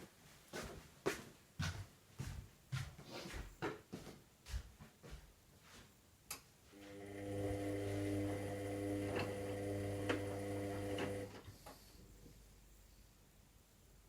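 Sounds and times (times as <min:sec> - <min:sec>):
washing machine hum: 0:06.7 - 0:11.5.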